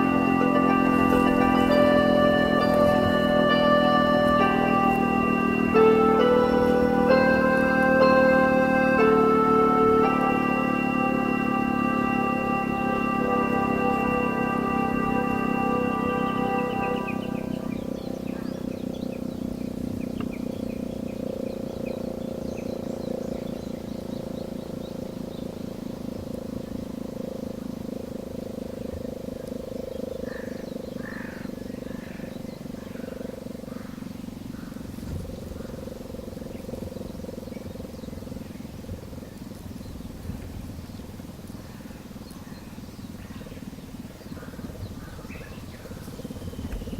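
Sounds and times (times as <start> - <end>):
siren over loudspeakers: 0.0 - 18.4.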